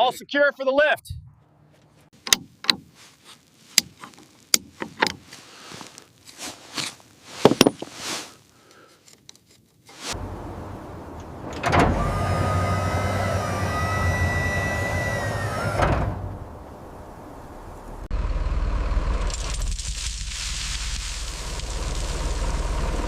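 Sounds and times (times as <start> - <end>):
engine running with low hum: 10.2 - 20.2, 21.1 - 23.0.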